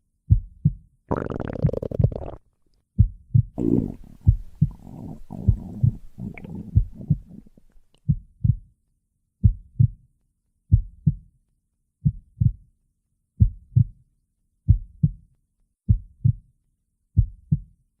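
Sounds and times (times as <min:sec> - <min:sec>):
heartbeat thumps: 0:00.3 - 0:00.8, 0:03.0 - 0:07.5, 0:08.1 - 0:08.7, 0:09.4 - 0:10.0, 0:10.7 - 0:11.2, 0:12.0 - 0:12.6, 0:13.4 - 0:13.9, 0:14.7 - 0:15.2, 0:15.9 - 0:16.4, 0:17.2 - 0:17.6
stomach growling and gurgling: 0:01.1 - 0:02.4, 0:03.6 - 0:08.0.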